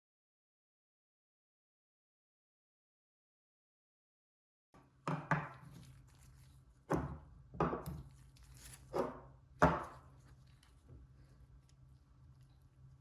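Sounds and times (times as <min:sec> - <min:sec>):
hard objects knocking on workbench: 0:05.1 - 0:05.6, 0:06.9 - 0:08.0, 0:09.0 - 0:10.0
faint low hum: 0:05.6 - 0:13.0.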